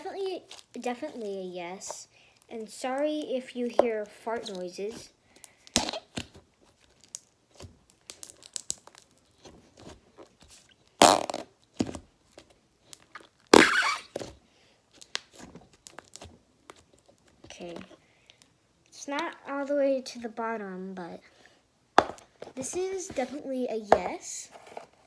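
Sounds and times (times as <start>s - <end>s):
slime crackling and clicking: 7.9s - 9.2s
fart-like slime squelches: 13.1s - 14.2s.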